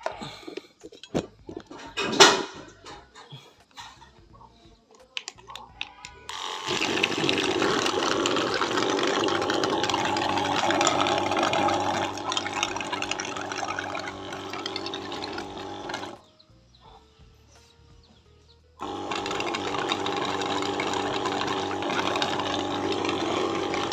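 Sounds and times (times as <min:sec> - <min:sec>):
pump motor humming: 0:06.3 - 0:16.2, 0:18.8 - 0:23.9
water spraying: 0:06.6 - 0:16.2.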